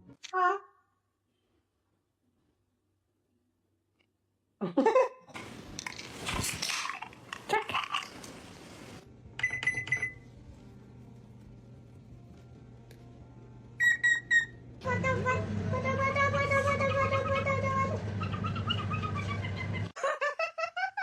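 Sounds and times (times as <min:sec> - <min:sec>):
parrot squawking: 0:16.5 - 0:19.9.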